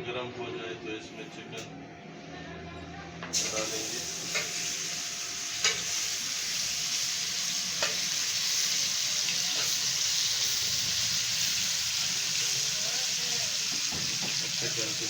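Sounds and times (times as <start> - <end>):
chicken sizzling on a griddle: 3.3 - 15.0.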